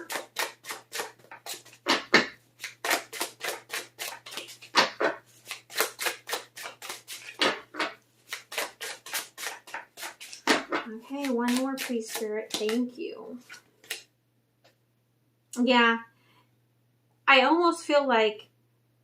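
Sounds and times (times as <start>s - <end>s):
cards being shuffled: 0.0s - 14.1s.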